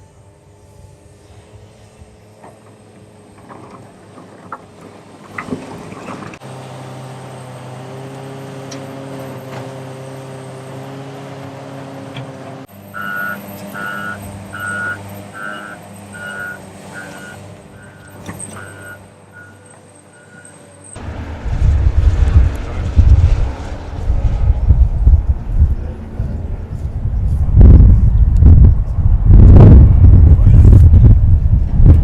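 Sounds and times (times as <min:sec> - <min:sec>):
diesel engine running: 0:00.0 - 0:32.0
machinery clanks: 0:02.3 - 0:06.4
backup alarm beeping: 0:12.8 - 0:20.6.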